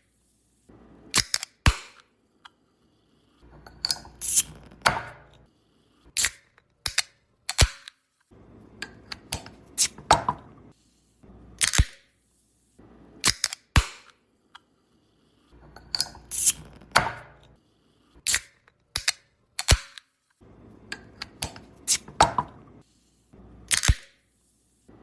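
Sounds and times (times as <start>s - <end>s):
hiss of escaping gas: 16.2s - 16.6s
drink can seal cracking: 23.7s - 24.2s.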